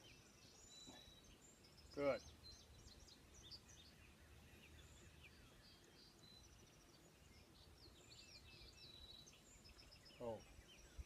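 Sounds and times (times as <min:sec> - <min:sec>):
songbirds chirping: 0:00.0 - 0:11.0.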